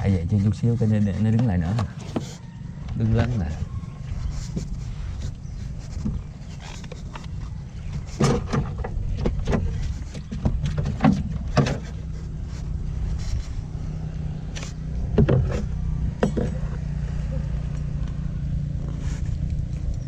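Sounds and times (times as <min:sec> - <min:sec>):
low rumble: 0:02.4 - 0:20.0
knocks and clunks of gear: 0:04.5 - 0:12.3, 0:14.5 - 0:16.9.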